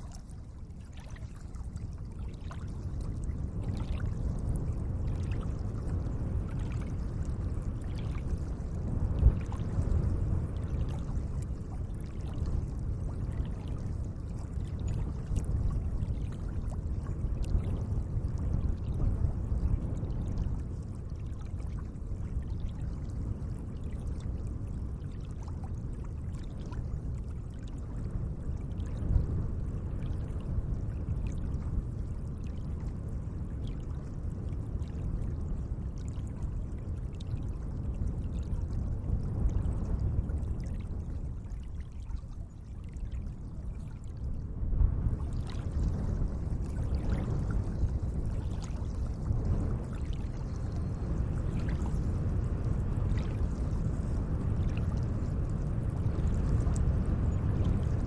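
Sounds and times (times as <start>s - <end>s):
small water splashes: 0.0s - 4.2s, 46.6s - 50.8s, 53.1s - 53.5s.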